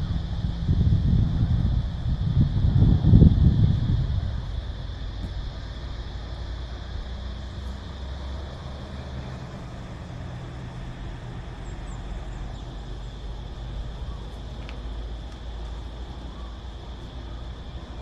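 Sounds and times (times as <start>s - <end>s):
cicadas droning: 0.0s - 18.0s
wind rumble on microphone: 0.0s - 18.0s
faint high bird chirps: 13.9s - 14.4s.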